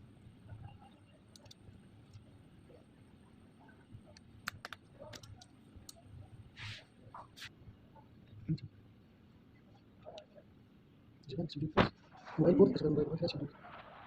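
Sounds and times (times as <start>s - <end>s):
sharp clicks and ticks: 0.9s - 2.4s, 4.0s - 6.1s.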